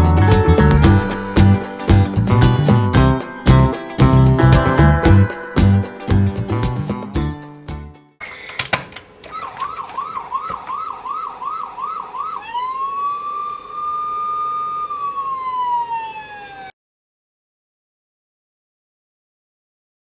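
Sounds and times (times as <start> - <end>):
toy electronic siren: 9.3 - 16.8.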